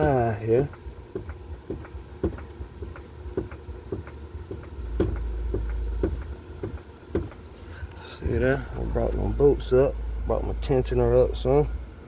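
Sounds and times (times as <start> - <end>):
jack pumping clicks: 0.0 - 8.0.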